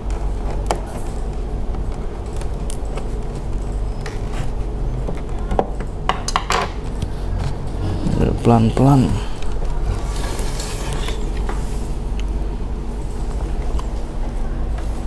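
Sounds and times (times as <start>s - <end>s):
steady low hum: 6.8s - 15.0s.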